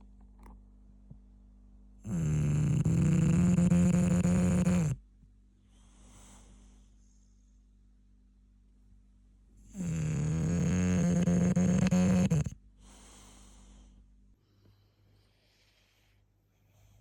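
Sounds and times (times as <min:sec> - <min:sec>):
dog snoring: 0:02.0 - 0:05.0, 0:09.7 - 0:12.6.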